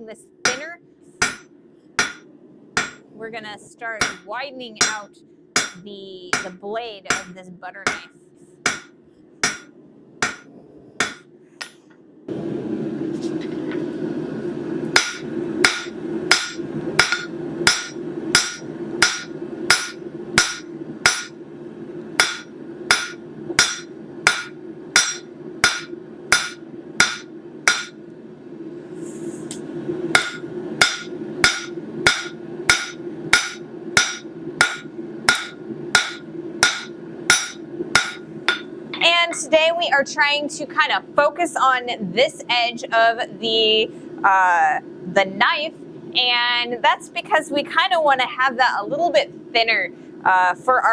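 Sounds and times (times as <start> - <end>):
steady low hum: 0.0 - 50.9
hammer striking metal on anvil: 1.2 - 1.4, 2.0 - 2.2, 2.8 - 3.0, 4.0 - 8.1, 8.7 - 11.8, 15.0 - 21.4, 22.2 - 28.0, 30.2 - 39.1.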